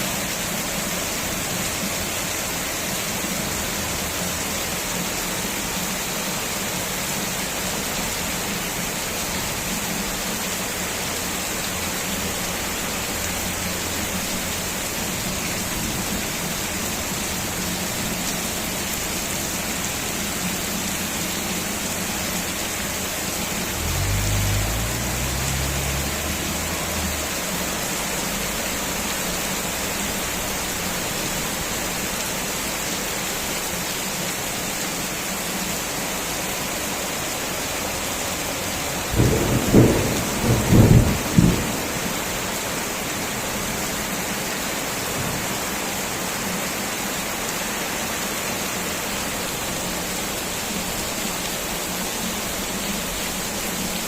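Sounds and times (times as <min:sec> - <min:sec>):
heavy rain: 0:00.0 - 0:54.0
thunder rumbling: 0:39.1 - 0:42.2.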